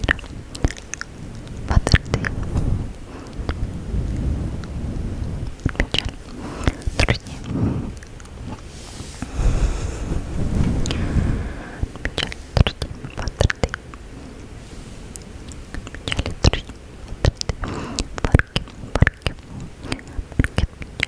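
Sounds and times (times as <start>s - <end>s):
wet mouth clicks and smacks: 15.8s - 21.0s.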